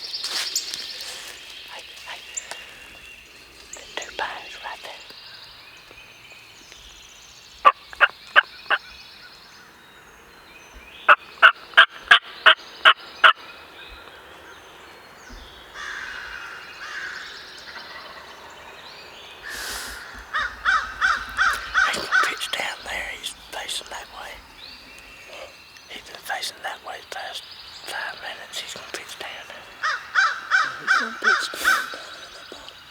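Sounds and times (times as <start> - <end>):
wild turkey yelping: 29.8 - 32.7.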